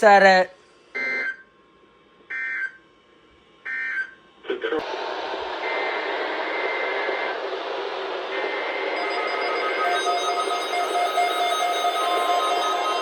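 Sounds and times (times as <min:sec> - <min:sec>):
pulsing electronic alarm beep: 0:09.0 - 0:13.0.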